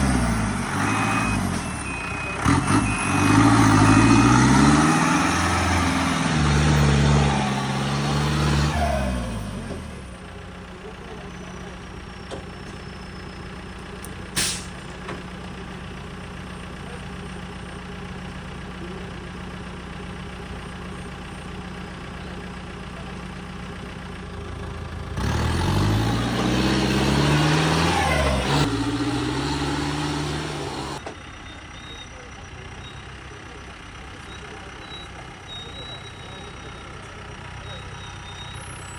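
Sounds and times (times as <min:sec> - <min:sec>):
engine revving hard: 0:00.0 - 0:10.0, 0:25.1 - 0:31.0
engine idling: 0:09.1 - 0:25.2, 0:30.6 - 0:38.9.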